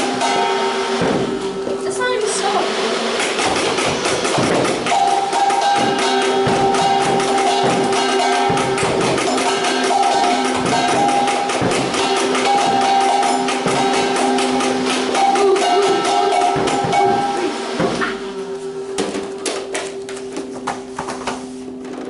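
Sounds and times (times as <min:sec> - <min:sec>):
music with fast percussive beat: 0:03.1 - 0:18.3.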